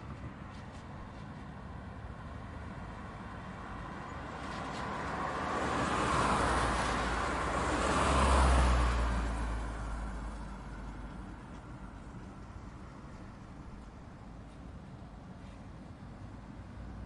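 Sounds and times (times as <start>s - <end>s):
car passing by: 3.8s - 13.0s.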